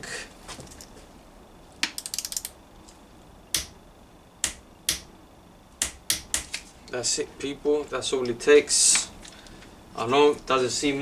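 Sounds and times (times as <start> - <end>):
torque wrench sharp clicks: 1.8 - 2.6, 3.6 - 3.8, 4.4 - 5.1
wrench ratchet clicks: 1.9 - 2.6.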